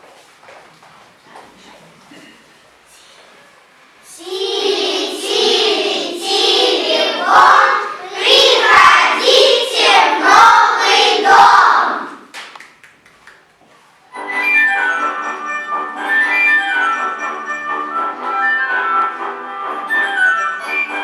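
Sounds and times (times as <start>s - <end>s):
children singing together: 4.1s - 12.3s.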